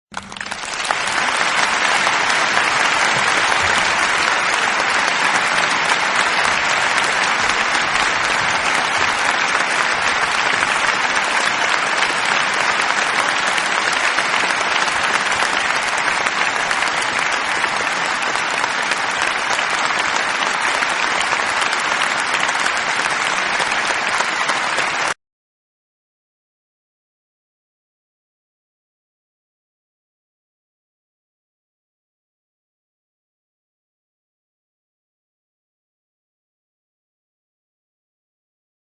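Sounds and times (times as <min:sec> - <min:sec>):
audience applauding: 0:00.1 - 0:25.2.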